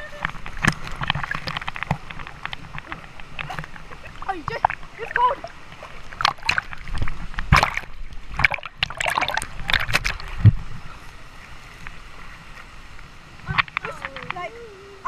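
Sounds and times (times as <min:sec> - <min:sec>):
heavy dull splash: 0:00.0 - 0:11.0
water splashing and sloshing: 0:00.0 - 0:15.0.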